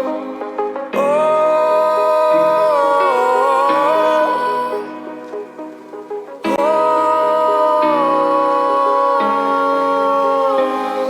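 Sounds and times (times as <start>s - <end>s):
singing voice: 0.0s - 11.0s
soft song: 0.0s - 11.0s.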